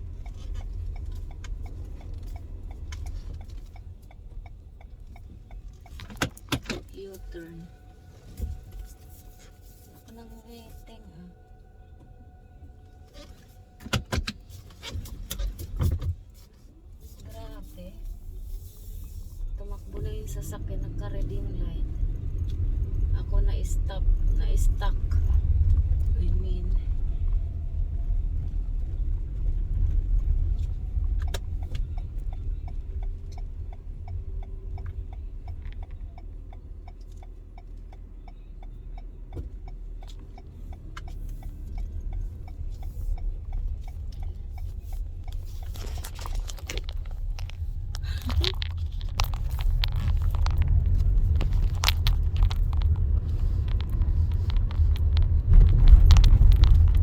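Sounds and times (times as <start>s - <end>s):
engine and road rumble: 0.0s - 57.0s
turn signal ticking: 0.0s - 57.0s
rough irregular noises: 44.8s - 57.0s.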